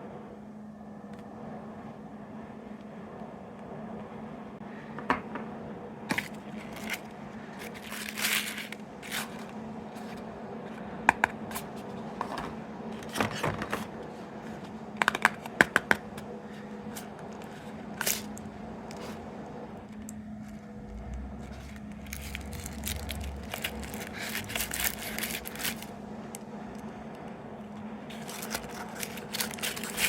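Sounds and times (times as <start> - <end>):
steady low hum: 0.0 - 30.0
packaging crinkling: 6.1 - 10.2, 16.9 - 19.2, 19.9 - 26.4, 28.1 - 30.0.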